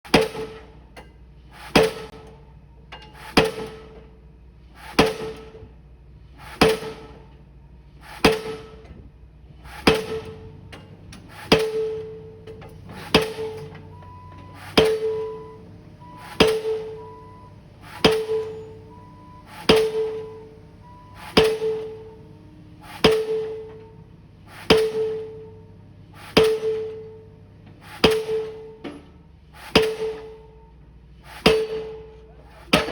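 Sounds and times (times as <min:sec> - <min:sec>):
pile-driving hammer striking: 0:00.1 - 0:00.8, 0:01.7 - 0:02.4, 0:03.2 - 0:04.1, 0:04.9 - 0:05.7, 0:06.5 - 0:07.3, 0:08.1 - 0:09.0, 0:09.7 - 0:30.6, 0:31.3 - 0:32.1.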